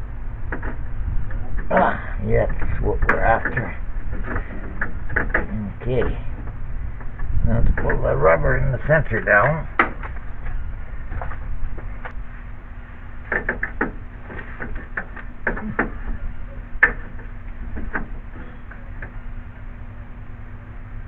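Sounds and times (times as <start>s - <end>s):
steady low rumble: 0.0s - 21.0s
light clicks and knocks of hand work: 13.3s - 16.2s.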